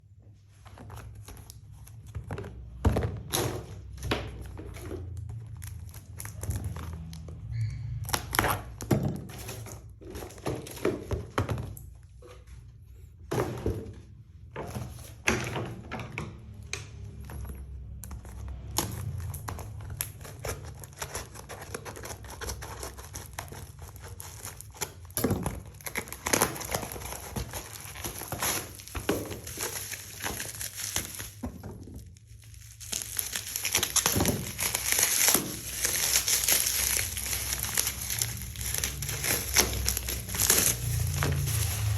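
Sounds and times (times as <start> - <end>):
plastic crinkling: 0.7 - 12.2, 17.0 - 41.9
box and parts knocking: 8.8 - 12.2, 13.2 - 19.2.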